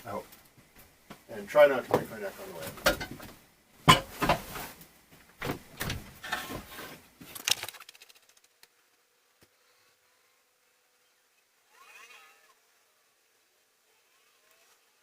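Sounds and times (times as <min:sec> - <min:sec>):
faint steady hum: 0:00.0 - 0:15.0
knocks and thumps: 0:01.9 - 0:04.7, 0:05.4 - 0:06.7
small clicks: 0:07.3 - 0:08.8.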